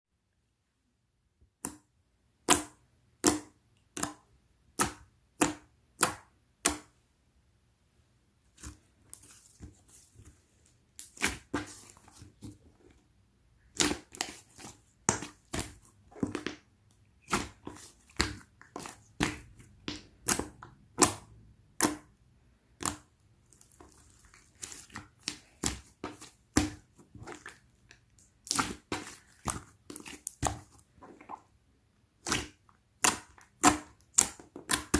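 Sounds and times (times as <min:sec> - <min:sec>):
slime crackling: 0:22.8 - 0:31.5.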